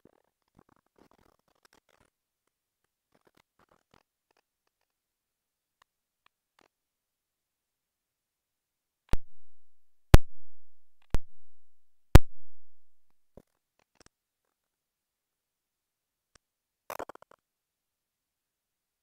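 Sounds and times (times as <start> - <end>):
electronic drum hits: 9.2 - 13.1.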